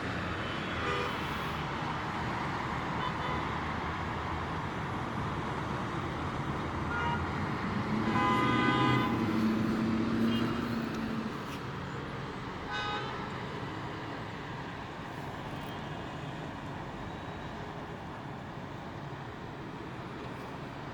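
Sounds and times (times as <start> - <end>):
road traffic: 0.0 - 20.9
car horn tooting: 6.9 - 7.2, 8.1 - 9.2.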